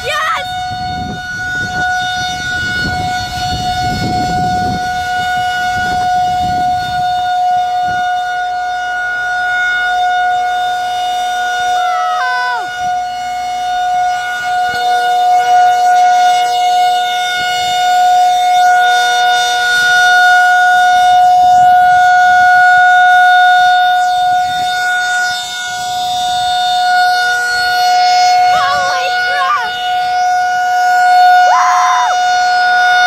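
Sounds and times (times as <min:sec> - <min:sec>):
rotating warning siren steady tone: 0:00.0 - 0:33.0.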